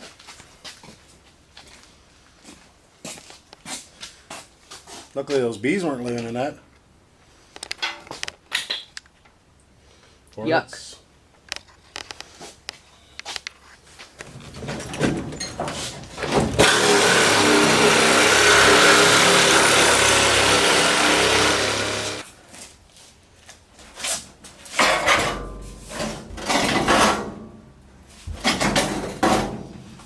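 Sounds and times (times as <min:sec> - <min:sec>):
power tool cutting sheet metal: 0:16.2 - 0:22.3.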